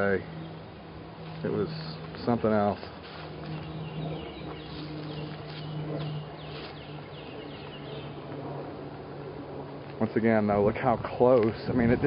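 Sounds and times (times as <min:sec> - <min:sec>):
songbirds chirping: 0:00.0 - 0:10.6
steady low hum: 0:00.0 - 0:12.0.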